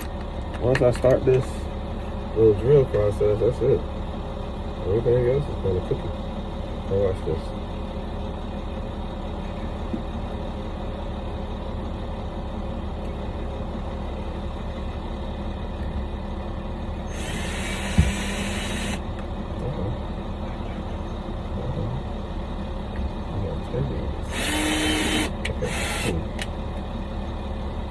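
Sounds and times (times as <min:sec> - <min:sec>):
power drill running: 0:17.1 - 0:19.1, 0:24.3 - 0:26.4.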